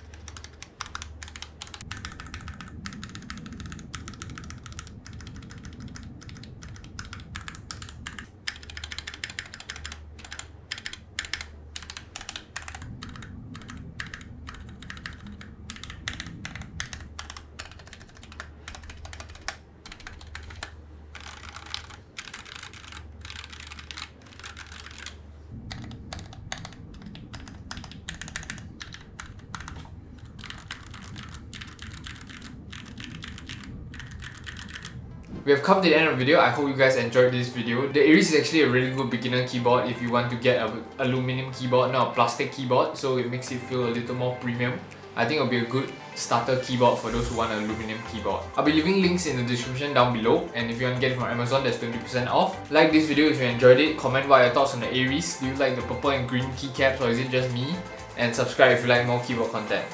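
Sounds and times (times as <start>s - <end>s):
mechanical keyboard typing: 0.0s - 35.0s.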